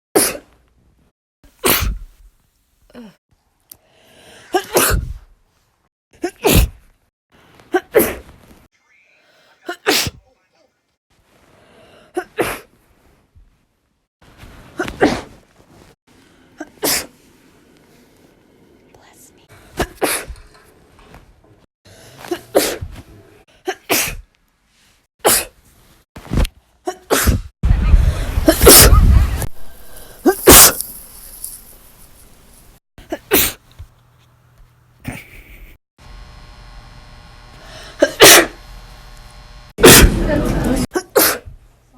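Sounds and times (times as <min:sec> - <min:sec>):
woman sneezing: 0:01.6 - 0:02.1, 0:04.5 - 0:05.2, 0:06.2 - 0:06.8, 0:07.7 - 0:08.3, 0:09.6 - 0:10.2, 0:12.2 - 0:12.7, 0:16.6 - 0:17.1, 0:22.2 - 0:23.0, 0:23.6 - 0:24.2, 0:25.2 - 0:25.6, 0:26.9 - 0:27.5, 0:28.5 - 0:29.0, 0:30.0 - 0:30.8, 0:33.1 - 0:33.6, 0:38.0 - 0:38.6, 0:39.8 - 0:40.1, 0:40.9 - 0:41.6.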